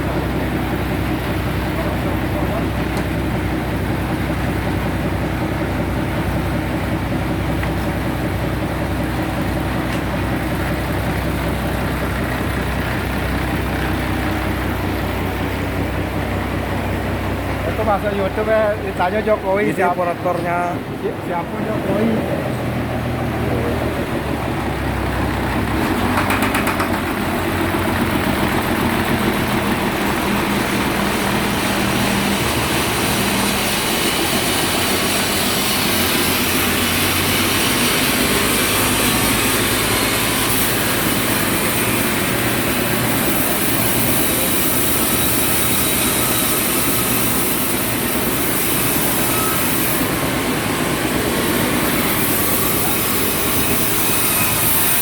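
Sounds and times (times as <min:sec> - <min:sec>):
engine hum: 0:00.0 - 0:55.0
saw rushing hiss: 0:28.8 - 0:55.0.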